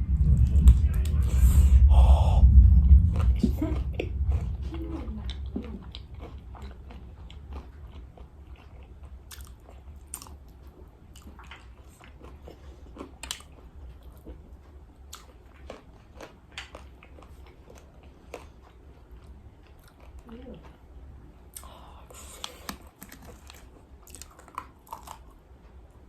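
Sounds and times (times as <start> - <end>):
crunchy bites and chewing: 21.6 - 25.4.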